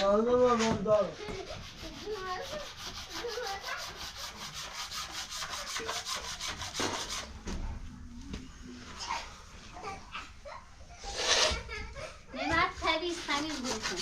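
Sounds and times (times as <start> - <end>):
rhythmic scraping with hand tool: 0.5 - 7.6, 11.0 - 14.0.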